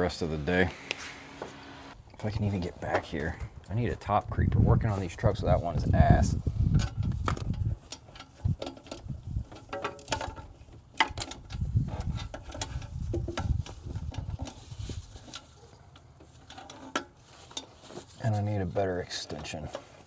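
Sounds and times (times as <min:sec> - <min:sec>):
low bumps: 0:00.0 - 0:07.8.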